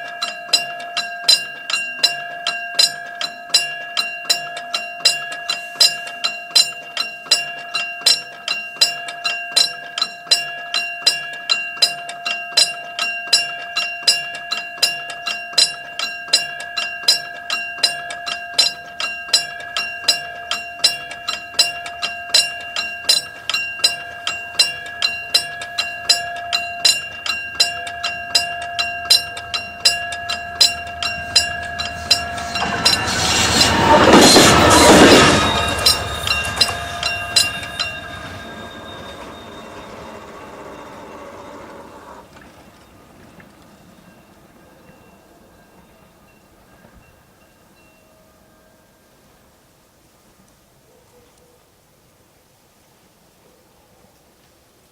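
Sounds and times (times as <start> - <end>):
level crossing warning bell: 0.0 - 50.0
train rumbling past: 19.7 - 47.9.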